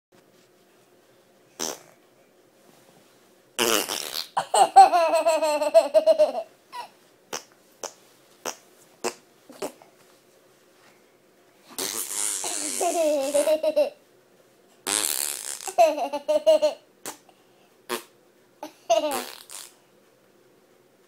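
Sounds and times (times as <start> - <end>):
child giggling: 4.4 - 7.0, 12.4 - 14.0
young child laughing: 4.4 - 7.0, 12.4 - 14.0, 18.6 - 19.4.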